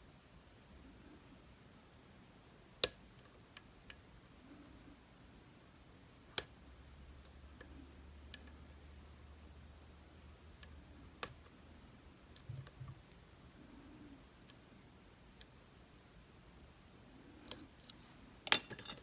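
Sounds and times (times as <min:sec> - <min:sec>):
lock picking tools clicking: 0:17.5 - 0:19.0.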